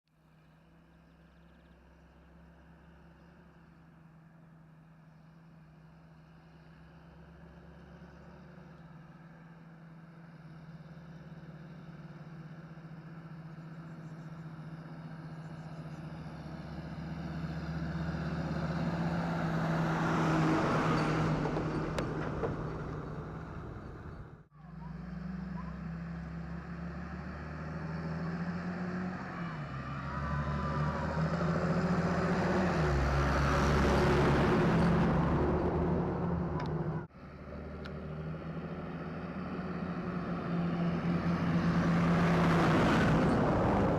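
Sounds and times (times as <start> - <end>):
tractor diesel engine running: 21.2 - 25.9.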